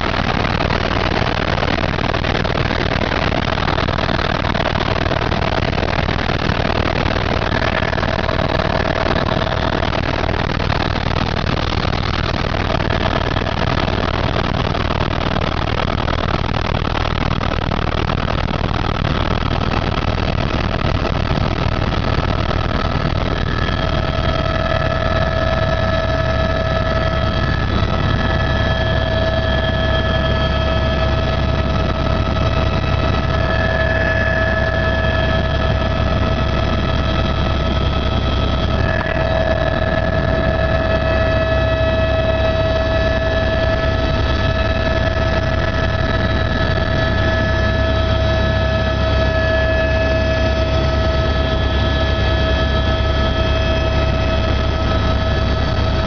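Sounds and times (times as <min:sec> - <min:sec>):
helicopter rotor and engine: 0:00.0 - 0:56.0
high whining tones: 0:06.3 - 0:11.1, 0:22.4 - 0:56.0.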